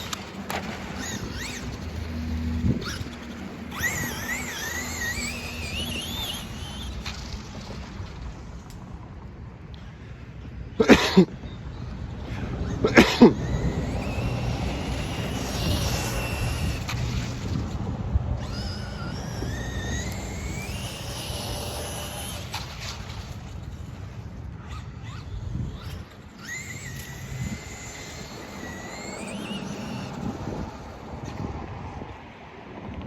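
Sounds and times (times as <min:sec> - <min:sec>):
electric motor whining: 0:00.0 - 0:08.9, 0:11.4 - 0:31.8.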